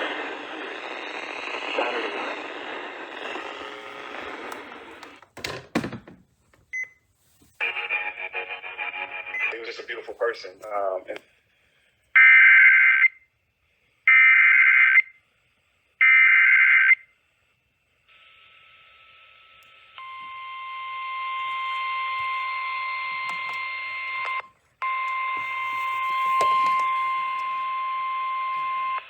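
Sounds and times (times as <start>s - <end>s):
radio hiss: 0.0s - 5.2s, 7.6s - 11.4s, 25.3s - 28.7s.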